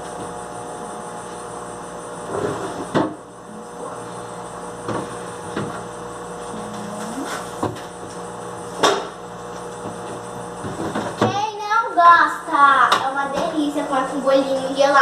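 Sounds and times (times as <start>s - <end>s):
steady low hum: 0.0s - 15.0s
knocks and clunks in refrigerator: 10.6s - 11.5s.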